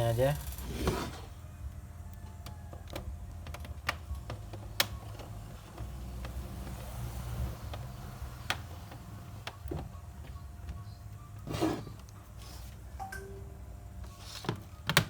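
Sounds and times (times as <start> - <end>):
plastic clips snapping loose: 2.8 - 5.0.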